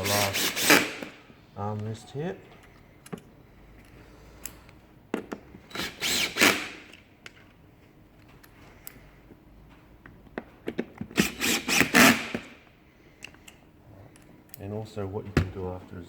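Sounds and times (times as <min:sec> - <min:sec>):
power drill driving screws: 0:00.0 - 0:01.1, 0:05.7 - 0:06.9, 0:11.2 - 0:12.5.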